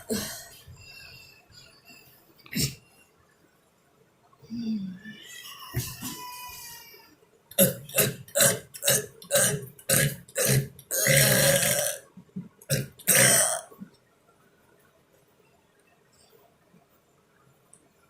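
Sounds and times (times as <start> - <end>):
person burping: 2.5 - 2.8, 7.5 - 12.1, 12.7 - 13.7.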